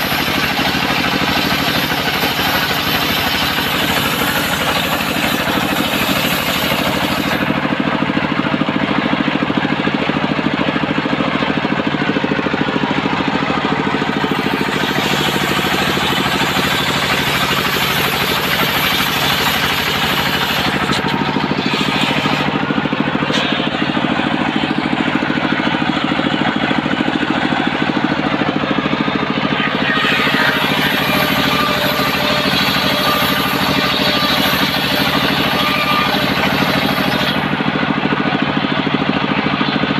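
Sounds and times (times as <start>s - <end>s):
circular sawmill cutting wood: 0.0s - 39.9s.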